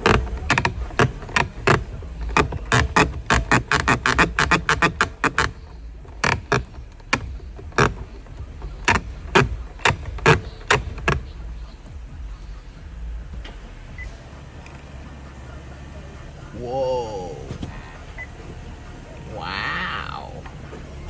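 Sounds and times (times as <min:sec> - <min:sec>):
side mirror motor clicking: 0:00.0 - 0:16.4
low steady hum: 0:00.0 - 0:21.0.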